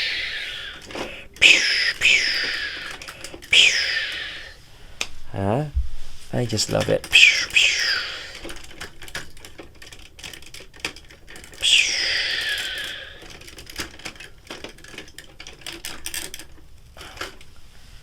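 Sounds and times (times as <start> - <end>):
hiss falling in pitch: 0.0 - 4.6, 7.1 - 8.5, 11.6 - 13.2
plastic toy parts clicking: 0.0 - 5.1, 6.6 - 17.5.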